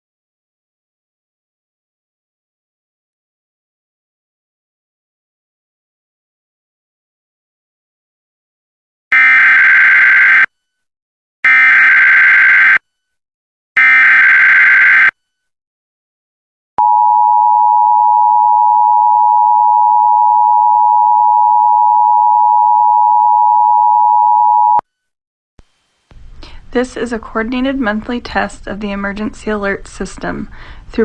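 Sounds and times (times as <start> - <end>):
steady attention tone: 16.8 - 24.8.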